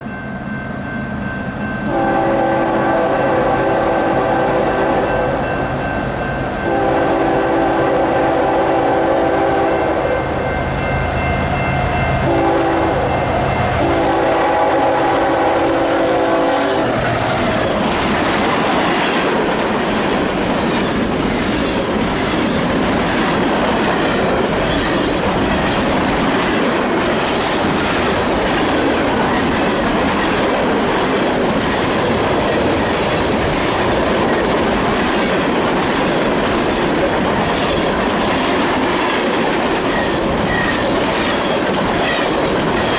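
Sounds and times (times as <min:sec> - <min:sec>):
locomotive air horn blasts: 0:01.9 - 0:05.3, 0:06.6 - 0:10.4, 0:12.2 - 0:17.0
rushing wheel noise: 0:13.0 - 0:42.9.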